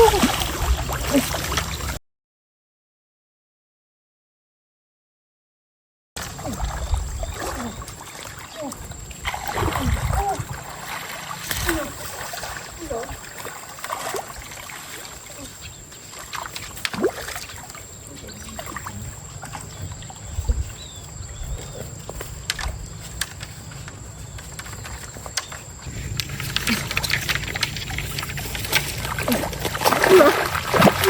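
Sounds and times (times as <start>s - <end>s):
knocks and small splashes: 0.0s - 2.0s, 6.2s - 31.0s
stream water trickling: 0.0s - 2.0s, 6.2s - 31.0s
low rumble: 25.8s - 30.8s.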